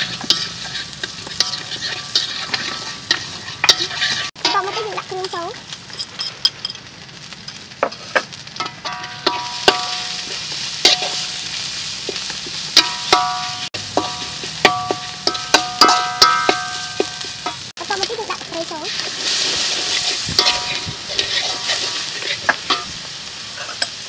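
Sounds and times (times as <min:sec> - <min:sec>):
food sizzling in pan: 0:00.0 - 0:24.0
metal spatula knocking on pan: 0:12.8 - 0:17.5.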